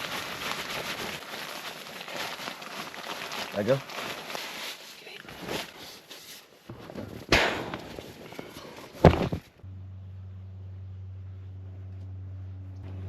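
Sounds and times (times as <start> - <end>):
rustling and knocking: 6.7 - 9.6
truck engine humming: 9.5 - 13.0.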